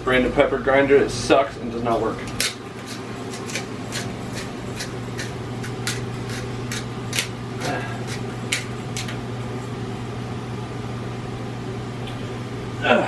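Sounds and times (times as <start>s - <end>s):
steady low hum: 0.0s - 13.0s
pepper grinder clicking: 2.3s - 9.2s.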